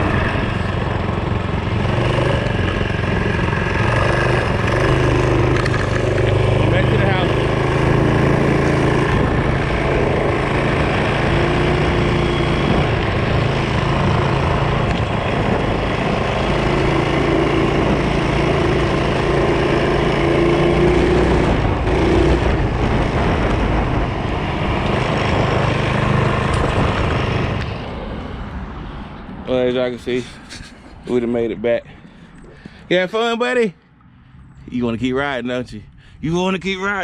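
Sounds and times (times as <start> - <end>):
engine running: 0.0 - 37.0.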